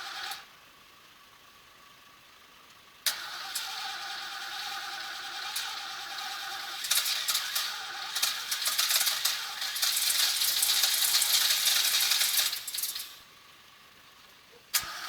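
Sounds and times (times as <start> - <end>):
engine spluttering on starting: 3.1 - 13.3, 14.7 - 15.0.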